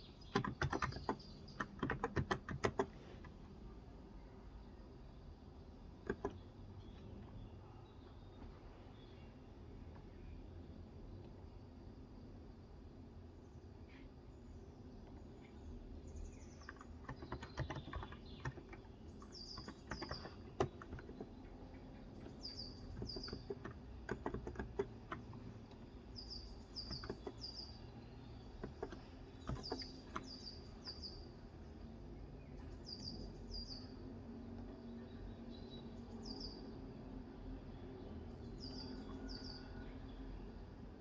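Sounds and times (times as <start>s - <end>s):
bird chirping: 0.0s - 2.8s, 4.2s - 10.5s, 13.4s - 40.7s
keyboard typing: 0.2s - 3.4s, 6.0s - 6.5s, 16.4s - 27.8s, 28.5s - 30.9s.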